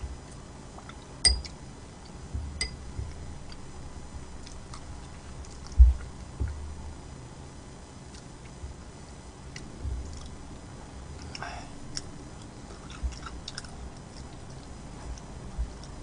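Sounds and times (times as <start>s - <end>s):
soft chewing: 0.0s - 2.2s, 3.0s - 6.7s, 8.0s - 8.8s, 9.4s - 16.0s
dull low thump: 2.3s - 3.3s, 5.8s - 6.9s, 9.8s - 10.1s.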